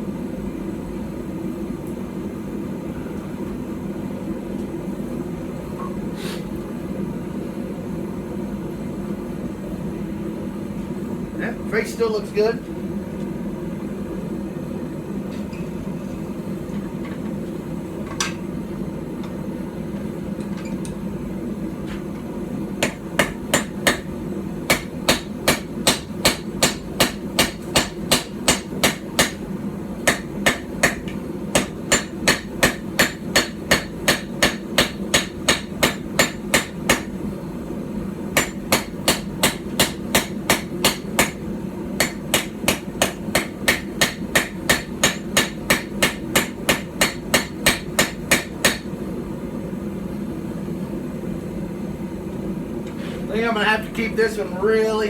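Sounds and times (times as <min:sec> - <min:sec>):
steady hum: 0:00.0 - 0:55.0
hammer striking steel on anvil: 0:22.8 - 0:24.1, 0:24.7 - 0:29.4, 0:30.0 - 0:37.1, 0:38.4 - 0:41.4, 0:42.0 - 0:48.9.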